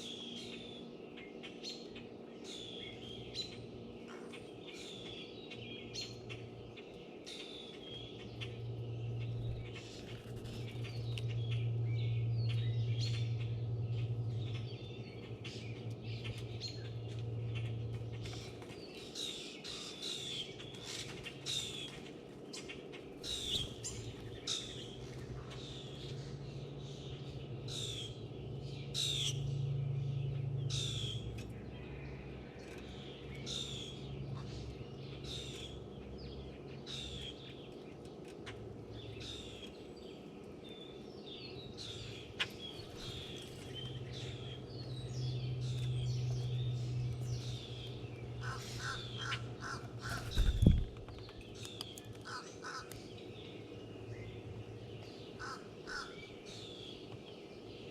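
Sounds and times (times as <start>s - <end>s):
birds chirping: 0.0s - 57.9s
crow cawing: 48.4s - 50.3s, 52.2s - 52.9s, 55.4s - 56.2s.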